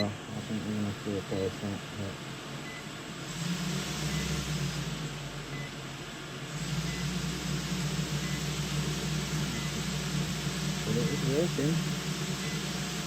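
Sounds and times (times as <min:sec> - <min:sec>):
low electronic hum and hiss: 0:00.0 - 0:03.3, 0:04.0 - 0:13.0.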